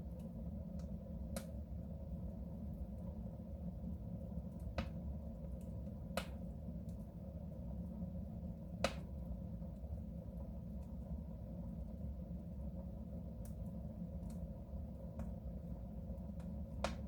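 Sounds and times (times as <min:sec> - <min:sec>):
fire rumbling in stove: 0:00.0 - 0:17.0
fire crackling pops: 0:00.1 - 0:01.7, 0:04.6 - 0:07.1, 0:08.6 - 0:09.4, 0:16.1 - 0:17.0.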